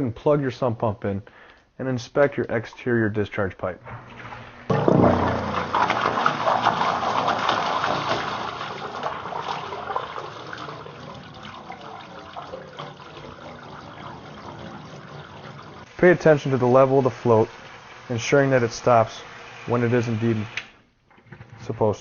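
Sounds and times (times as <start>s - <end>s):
sump pump pumping water: 4.0s - 20.7s.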